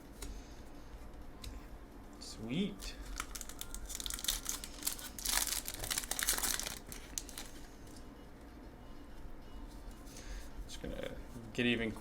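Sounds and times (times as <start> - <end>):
foil wrapper crinkling: 3.0 - 7.6.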